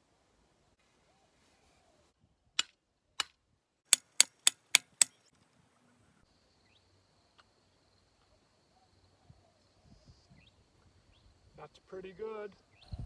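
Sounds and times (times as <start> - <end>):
hammer striking steel picket: 2.6 - 5.1.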